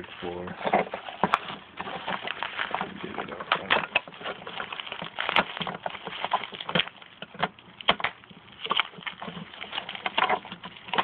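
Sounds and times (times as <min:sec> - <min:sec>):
plastic packaging crinkling: 0:00.0 - 0:11.0.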